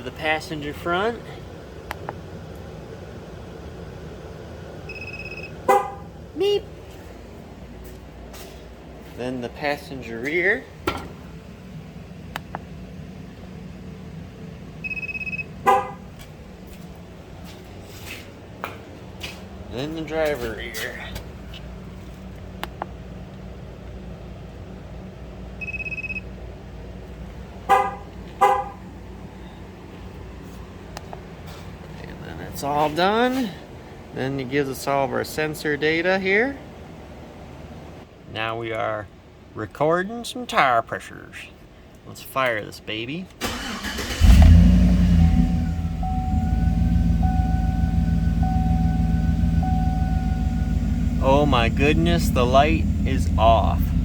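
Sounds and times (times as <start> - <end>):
car horn chirps: 5.7 - 6.0, 15.6 - 16.0, 27.7 - 28.8, 45.4 - 52.4
car engine idling: 10.5 - 17.8, 26.3 - 31.4, 43.4 - 54.0
pulsing high electronic tone: 45.7 - 54.0.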